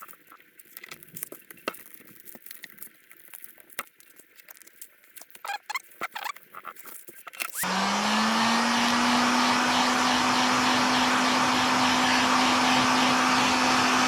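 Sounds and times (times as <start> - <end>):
short squeaks: 5.4 - 7.6.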